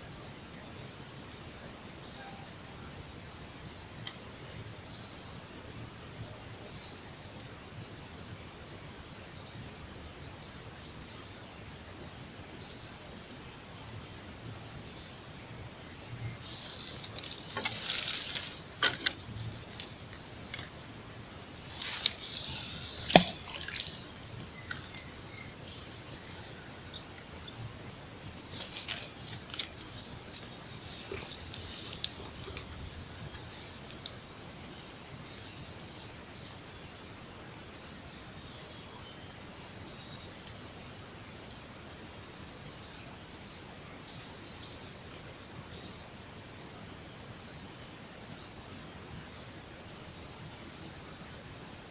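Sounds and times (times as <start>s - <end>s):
pulsing insect call: 0.0s - 43.1s
high-pitched insect chorus: 0.0s - 51.9s
water splashes and drips: 16.4s - 20.9s, 21.7s - 25.0s.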